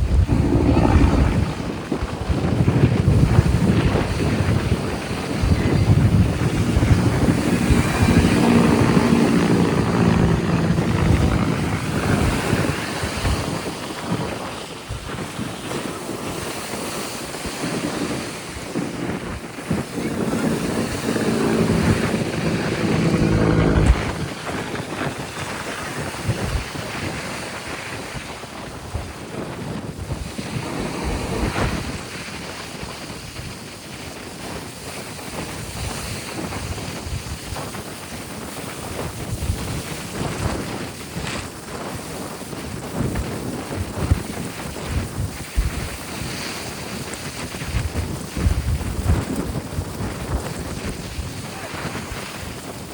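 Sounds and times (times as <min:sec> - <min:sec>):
wind buffeting microphone: 0:00.0 - 0:34.1, 0:35.0 - 0:52.9
waves breaking ashore: 0:04.0 - 0:14.7, 0:16.1 - 0:25.9
low steady hum: 0:19.8 - 0:24.4.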